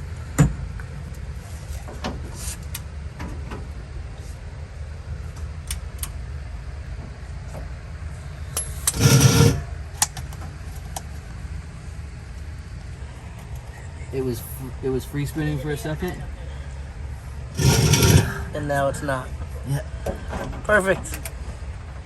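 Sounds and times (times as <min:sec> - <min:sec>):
electric fuel pump humming: 0:08.8 - 0:09.8, 0:17.5 - 0:18.6.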